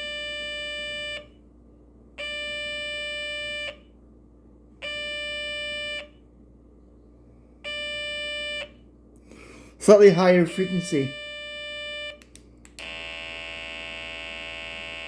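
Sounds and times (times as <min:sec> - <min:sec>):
buzzy electronic alarm beeps: 0:00.0 - 0:01.3, 0:04.8 - 0:06.2, 0:07.7 - 0:08.7, 0:09.8 - 0:12.2, 0:12.8 - 0:15.0.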